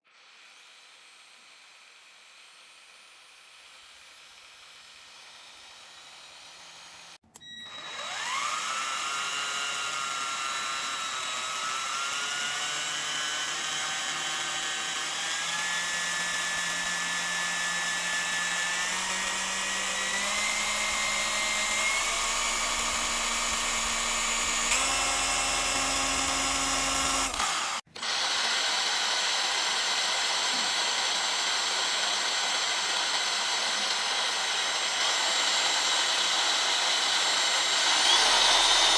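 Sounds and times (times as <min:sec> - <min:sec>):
cordless power tool motor whine: 0:00.1 - 0:38.9.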